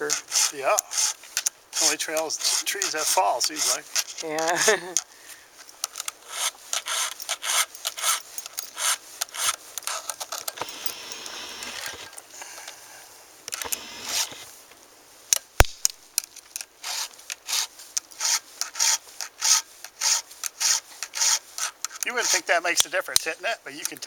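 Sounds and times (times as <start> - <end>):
file rasping on chainsaw teeth: 0.1 - 1.2, 1.8 - 4.1, 6.2 - 12.1, 16.8 - 22.5
sharp click: 15.3 - 16.3.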